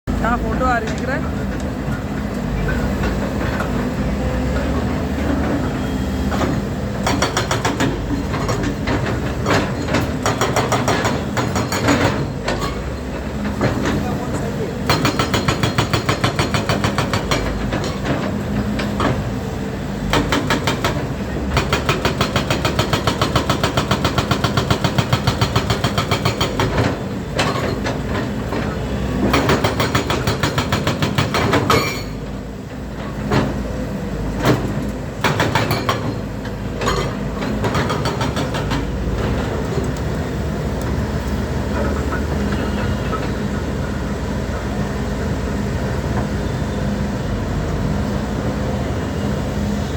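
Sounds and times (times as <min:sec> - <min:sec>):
excavator engine and hydraulics: 0:00.1 - 0:49.9.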